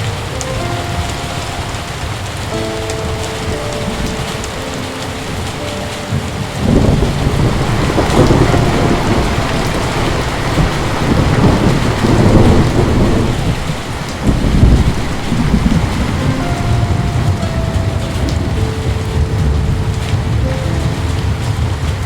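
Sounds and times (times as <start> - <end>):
heavy rain: 0.0 - 22.0
rolling thunder: 0.0 - 22.0.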